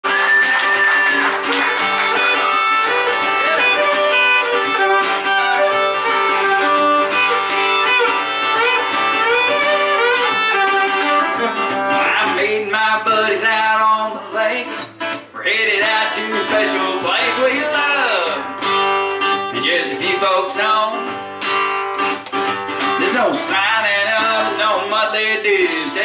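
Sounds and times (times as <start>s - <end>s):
fiddle melody: 0.0s - 13.6s
strummed acoustic guitar: 0.0s - 26.0s.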